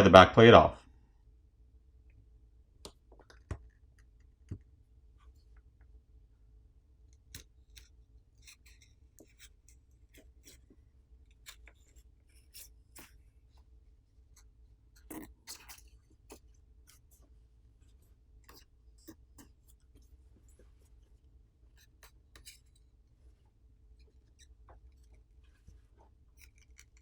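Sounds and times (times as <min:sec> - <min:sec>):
plastic pry tools clicking and scraping: 0:07.3 - 0:10.6, 0:26.4 - 0:27.0.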